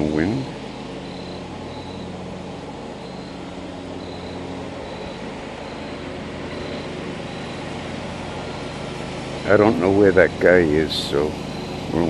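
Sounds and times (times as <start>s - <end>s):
faint high beep: 0.0s - 2.2s, 3.0s - 7.8s
lawn mower engine running: 0.0s - 12.0s.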